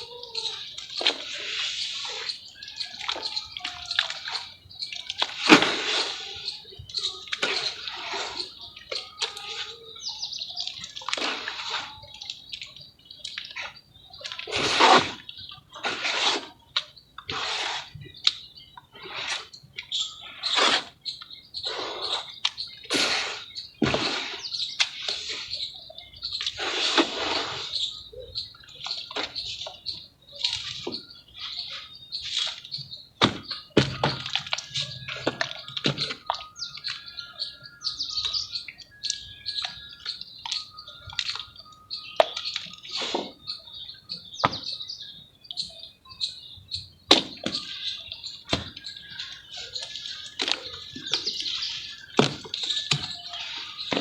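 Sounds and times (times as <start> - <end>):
mud splashing into water: 32.2 - 37.0.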